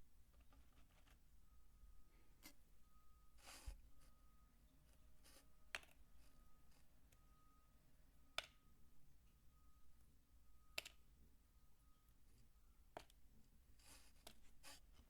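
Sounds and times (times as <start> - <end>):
faint crisp clicks of bar soap: 5.7 - 6.0, 10.8 - 11.0, 12.9 - 13.2.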